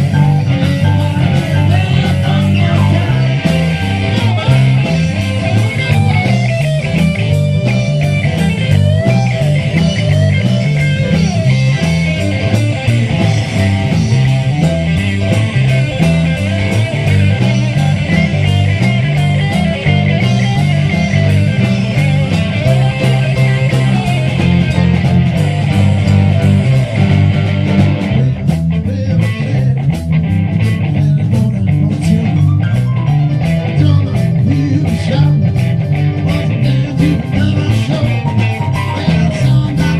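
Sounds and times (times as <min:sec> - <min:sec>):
drum hits: 0:00.0 - 0:28.3
bass line: 0:00.0 - 0:39.9
rock music with electric guitar: 0:00.0 - 0:39.9.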